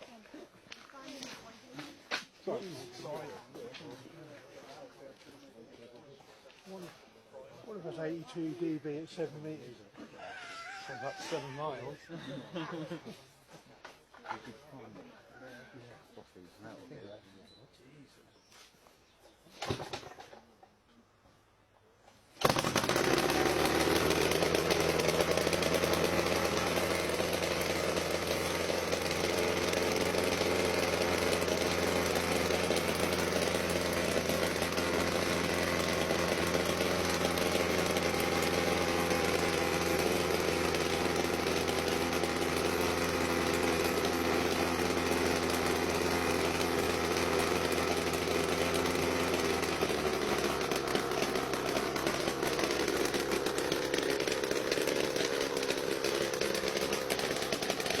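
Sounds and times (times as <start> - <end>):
small helicopter engine running: 22.4 - 58.0.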